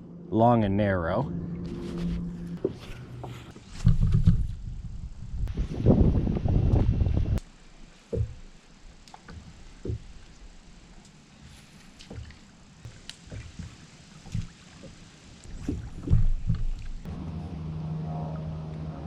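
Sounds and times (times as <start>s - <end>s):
kayak paddle splashes: 7.5s - 17.1s.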